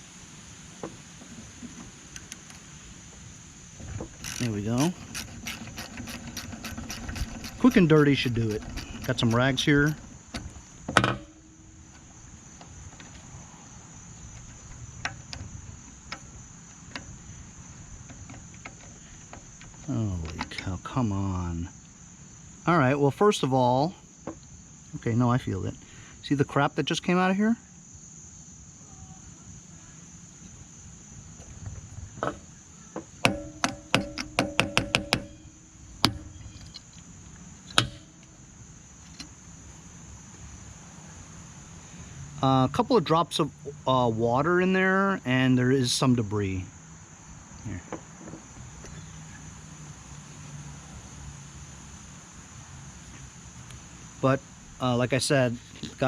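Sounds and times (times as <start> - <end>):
crickets chirping: 0.0 - 56.0
ratchet clicking: 3.9 - 11.6, 33.2 - 35.4
hard taps on metal: 4.8 - 11.5, 32.2 - 36.7, 37.7 - 38.3.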